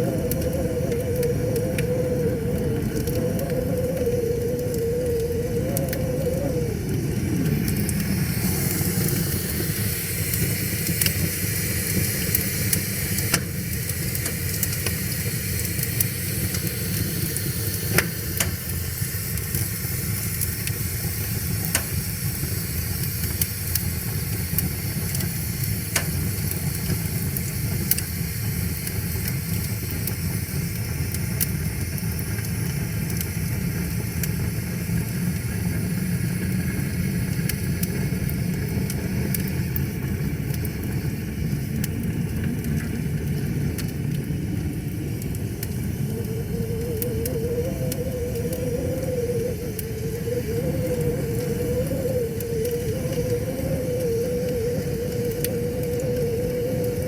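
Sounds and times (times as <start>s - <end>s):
wood fire crackling: 0.0s - 57.0s
sharp fire pops: 7.3s - 20.7s.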